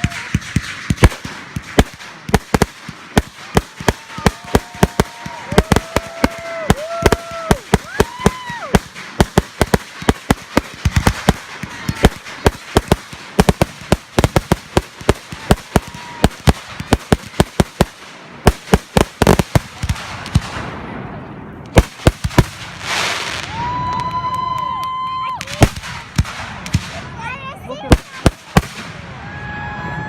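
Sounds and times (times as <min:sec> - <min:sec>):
fireworks bursting: 0:00.0 - 0:29.2
fireworks crackling hiss: 0:21.7 - 0:23.8.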